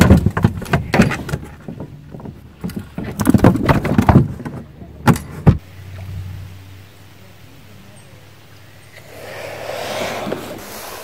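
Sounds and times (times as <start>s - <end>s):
knocks and rattling in a boat: 0.0s - 5.6s.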